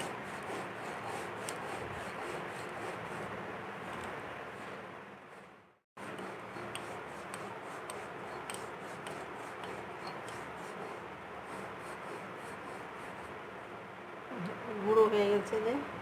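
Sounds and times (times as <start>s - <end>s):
stone grinding on stone slab: 0.0s - 3.3s, 6.0s - 11.0s.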